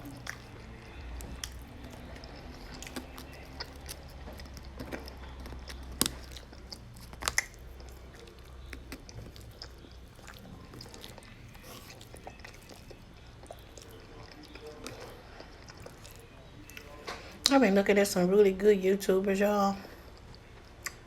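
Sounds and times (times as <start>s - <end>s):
person chewing food: 0.0s - 17.6s, 19.9s - 21.0s
low steady hum: 0.0s - 21.0s.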